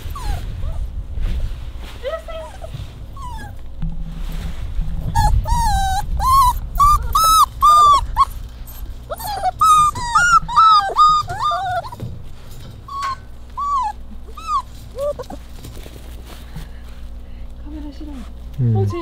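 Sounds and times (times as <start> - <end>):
puppy whining: 0.0 - 1.0, 2.2 - 3.8, 4.9 - 16.4.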